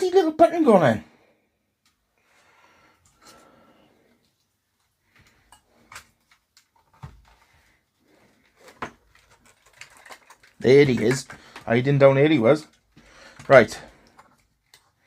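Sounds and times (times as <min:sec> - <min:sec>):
plastic parts clicking and knocking: 0:04.8 - 0:07.7, 0:08.3 - 0:15.0.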